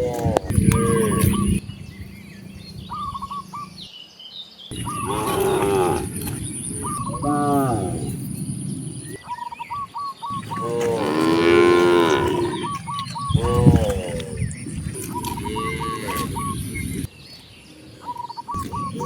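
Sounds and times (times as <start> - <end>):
bird chirps: 0.5 - 19.0
cattle mooing: 4.7 - 6.4, 10.4 - 14.4, 15.0 - 16.6.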